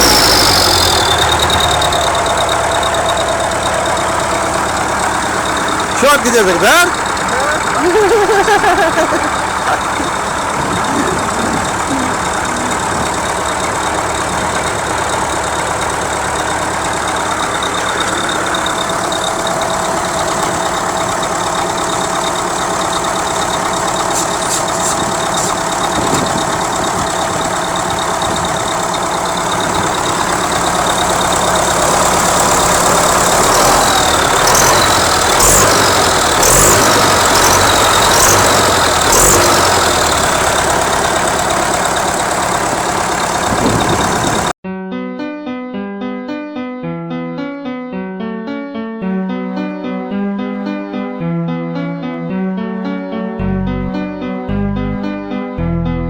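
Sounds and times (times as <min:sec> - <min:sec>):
high turbo whistle: 0:00.0 - 0:07.8, 0:09.2 - 0:44.5
tractor diesel engine running: 0:00.0 - 0:44.6.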